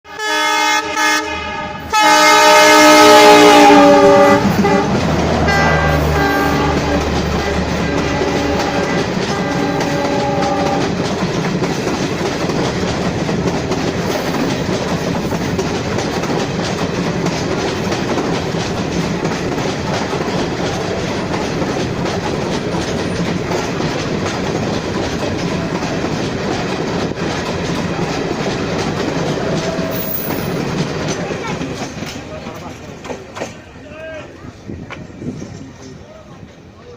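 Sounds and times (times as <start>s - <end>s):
train horn: 0.1s - 11.0s
train rushing past: 0.1s - 36.9s
wheels clacking over rail joints: 3.8s - 36.9s.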